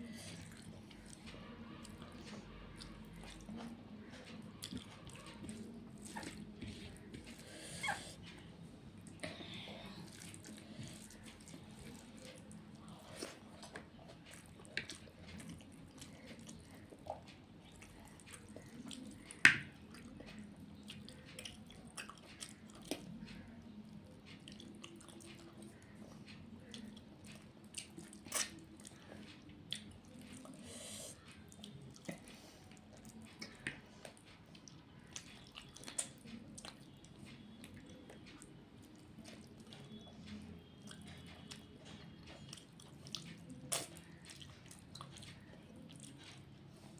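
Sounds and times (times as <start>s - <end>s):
person chewing food: 0.0s - 46.9s
small clicks and smacks: 13.4s - 30.6s.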